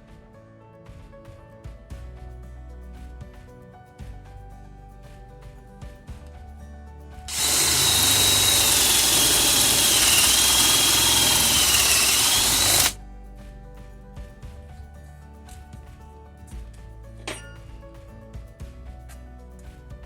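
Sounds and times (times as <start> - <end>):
quiet background music: 0.0 - 20.0
cordless drill whining: 7.3 - 13.0.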